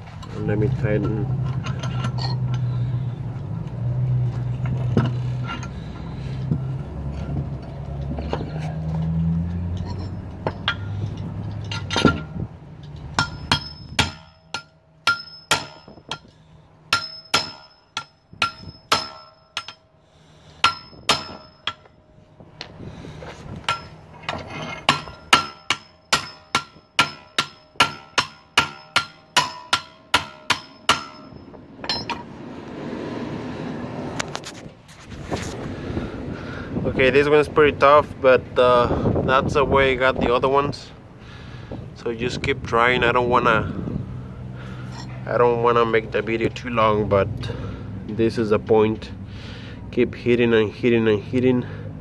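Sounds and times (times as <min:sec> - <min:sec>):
wind rumble on microphone: 0:03.0 - 0:14.2, 0:15.7 - 0:16.4, 0:20.8 - 0:25.2, 0:31.1 - 0:46.6
hammer clanking on metal: 0:11.5 - 0:12.4, 0:13.1 - 0:16.3, 0:16.9 - 0:19.9, 0:20.6 - 0:22.0, 0:23.6 - 0:32.3
steady rushing noise: 0:29.4 - 0:37.5.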